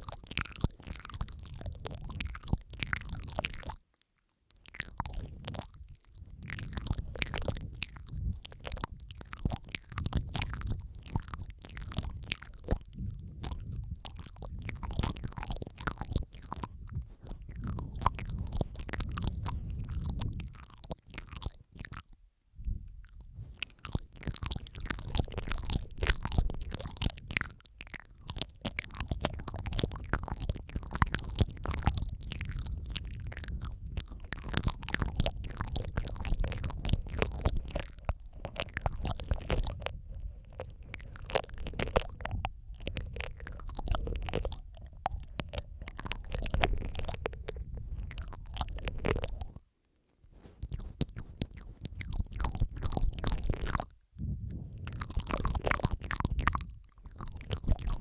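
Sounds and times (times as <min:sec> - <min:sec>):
wet mouth clicks and smacks: 0:00.0 - 0:49.7, 0:50.3 - 0:58.0
low rumble: 0:54.2 - 0:55.6.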